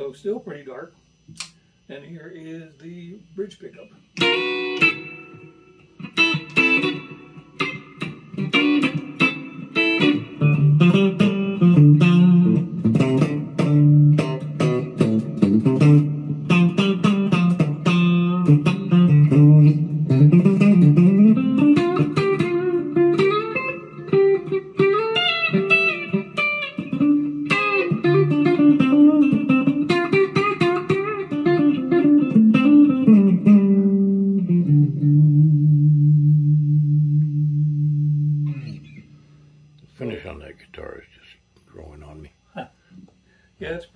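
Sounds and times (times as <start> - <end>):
electric guitar through an amp: 4.2 - 39.2.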